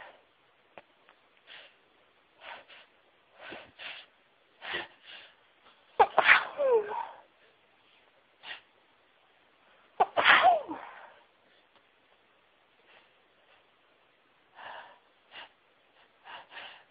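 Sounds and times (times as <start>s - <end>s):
short breath: 2.4s - 5.4s, 14.5s - 16.9s
woman sneezing: 6.0s - 7.2s, 10.0s - 11.0s.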